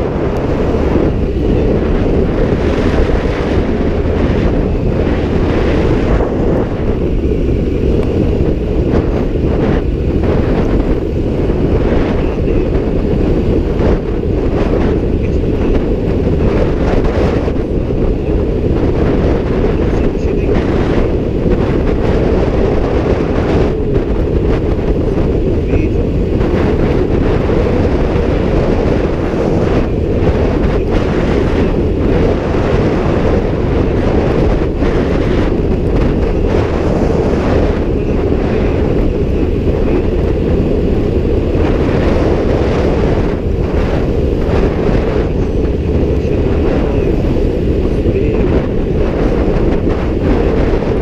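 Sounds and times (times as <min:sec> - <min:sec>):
low rumble of movement: 0:00.0 - 0:51.0
wind buffeting microphone: 0:00.0 - 0:51.0.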